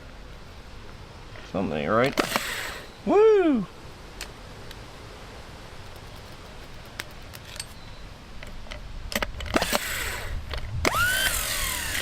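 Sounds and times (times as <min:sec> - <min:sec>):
starter motor whine: 0:09.6 - 0:12.0.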